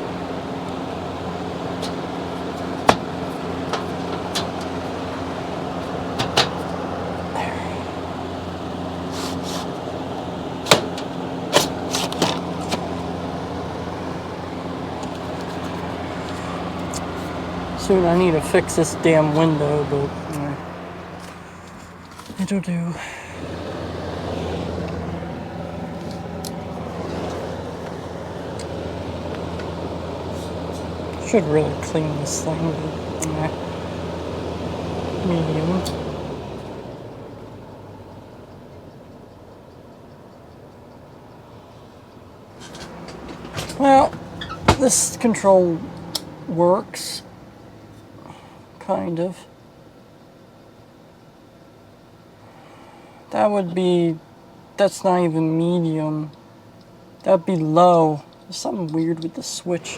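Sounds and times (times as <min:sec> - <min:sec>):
electric fan running: 0:00.0 - 0:59.9.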